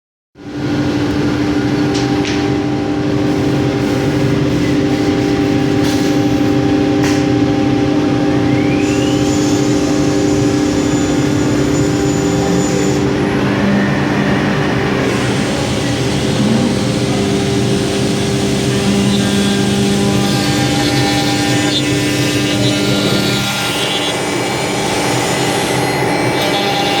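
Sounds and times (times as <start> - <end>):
cnc router hum: 0.4 - 27.0
short rising whine: 7.6 - 19.9.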